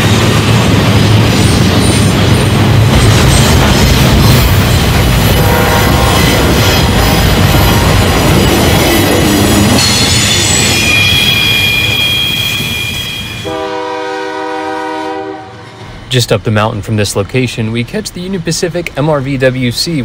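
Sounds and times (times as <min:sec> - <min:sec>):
freight train rumbling: 0:00.0 - 0:20.0
train horn blast: 0:05.4 - 0:08.0, 0:13.4 - 0:15.8
train wheel squeal: 0:08.4 - 0:13.6.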